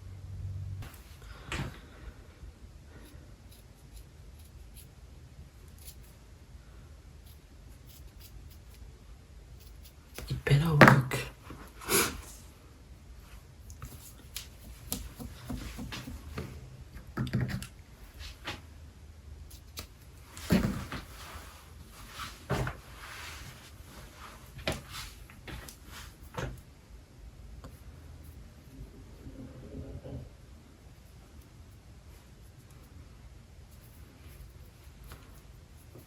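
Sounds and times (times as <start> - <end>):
objects knocking and clicking: 15.0 - 17.8.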